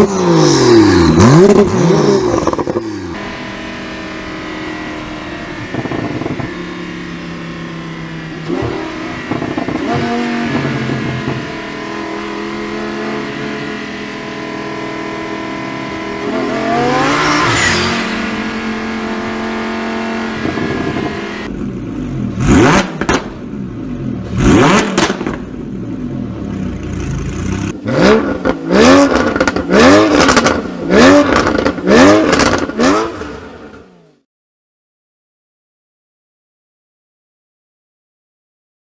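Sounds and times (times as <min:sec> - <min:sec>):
car engine revving: 0:00.0 - 0:34.2
exhaust cracks and pops: 0:05.7 - 0:06.6, 0:08.4 - 0:10.0.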